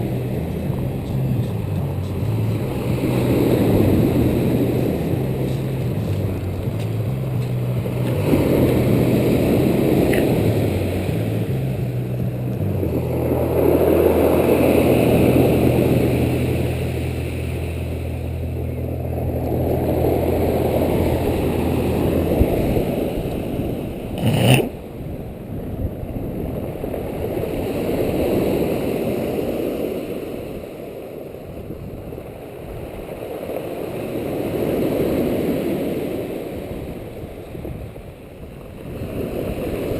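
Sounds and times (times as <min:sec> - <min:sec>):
low steady motor hum: 0:00.0 - 0:25.9
sea waves washing ashore: 0:00.0 - 0:39.9.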